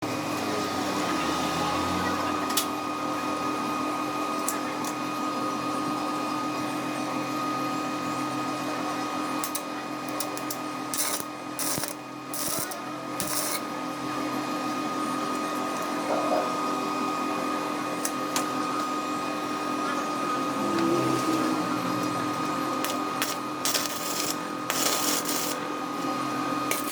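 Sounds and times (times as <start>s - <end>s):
machine humming and whining: 9.8s - 26.9s.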